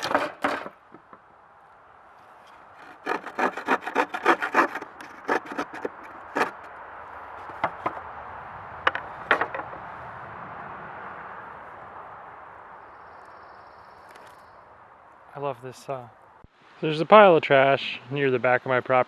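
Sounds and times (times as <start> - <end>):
handsaw cutting a board: 2.8 - 6.7.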